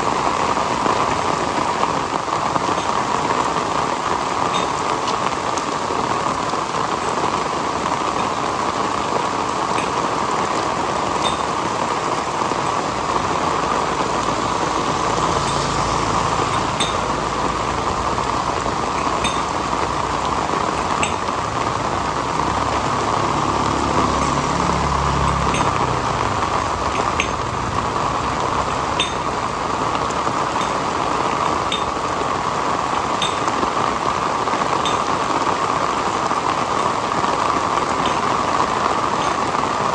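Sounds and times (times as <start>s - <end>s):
heavy rain falling: 0.0s - 39.9s
drops striking a hard surface: 19.0s - 19.6s, 21.0s - 21.3s, 29.0s - 29.3s.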